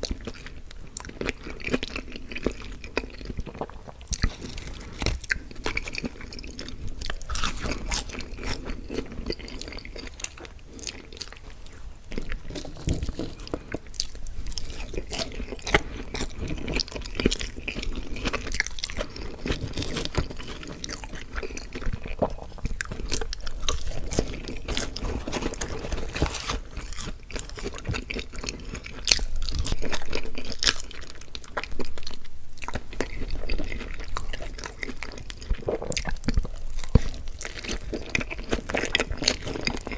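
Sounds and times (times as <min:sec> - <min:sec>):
person chewing crunchy food: 0:00.0 - 0:39.9.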